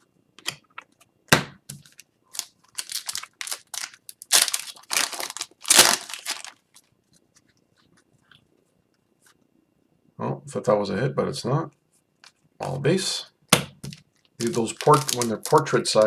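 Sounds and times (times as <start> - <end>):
foil wrapper crinkling and tearing: 1.7 - 6.9, 13.8 - 16.0
loud rustling: 2.4 - 6.5.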